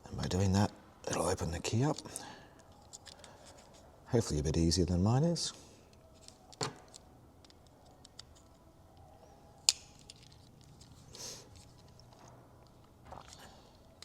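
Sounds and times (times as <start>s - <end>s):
plastic clicks and scrapes: 5.9s - 9.1s, 9.7s - 14.0s
sharp plastic snap: 9.6s - 10.2s.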